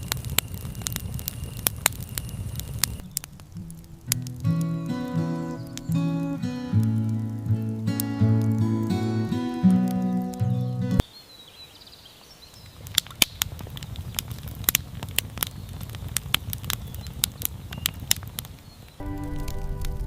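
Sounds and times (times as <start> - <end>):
campfire crackling: 0.0 - 11.0, 12.0 - 20.0
acoustic guitar music: 3.0 - 11.0, 19.0 - 20.0.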